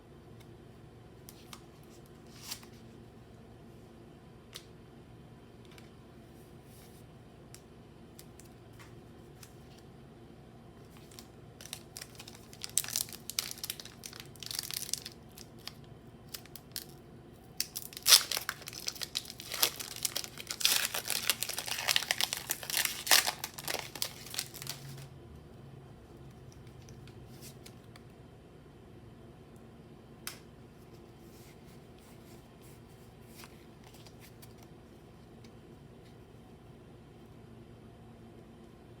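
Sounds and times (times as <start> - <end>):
foil wrapper crinkling and tearing: 10.9 - 17.0, 17.6 - 25.1.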